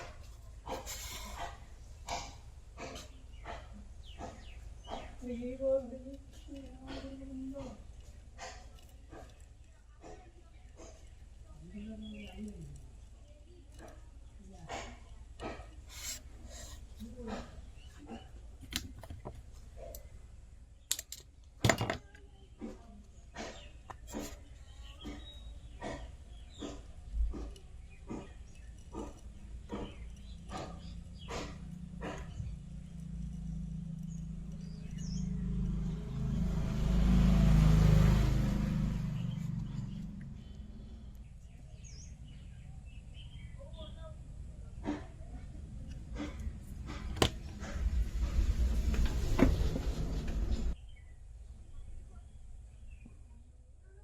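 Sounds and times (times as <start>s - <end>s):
hard objects clicking and scraping: 0.0s - 20.1s, 20.9s - 35.9s, 45.1s - 50.8s
steady low hum: 22.3s - 54.0s
motor vehicle passing by: 22.6s - 50.8s.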